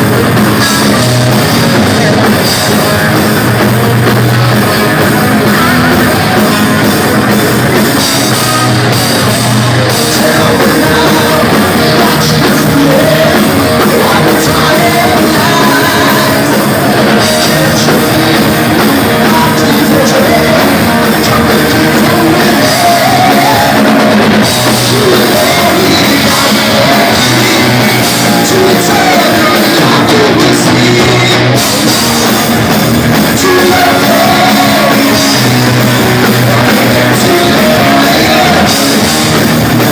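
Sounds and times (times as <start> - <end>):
heavy metal band playing live: 0.0 - 39.9
man singing: 9.8 - 32.4, 33.2 - 39.9.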